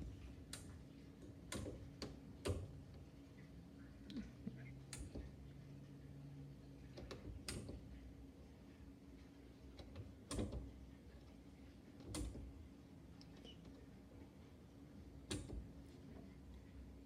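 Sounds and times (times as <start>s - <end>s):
faint clicks and knocks: 0.0s - 3.1s, 6.8s - 8.0s, 9.2s - 13.9s, 15.2s - 16.8s
low steady hum: 0.0s - 17.0s.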